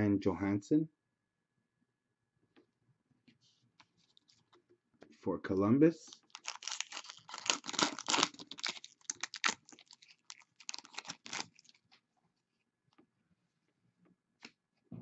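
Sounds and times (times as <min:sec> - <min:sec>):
wrapper tearing and crinkling: 0:06.1 - 0:12.0
cards being handled: 0:06.2 - 0:12.0.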